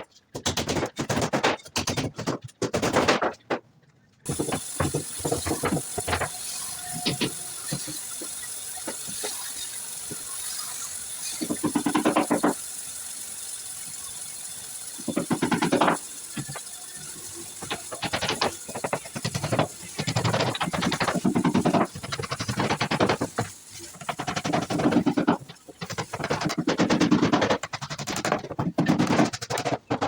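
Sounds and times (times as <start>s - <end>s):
steady hiss: 4.3s - 27.2s
rapid clicking: 4.3s - 30.0s.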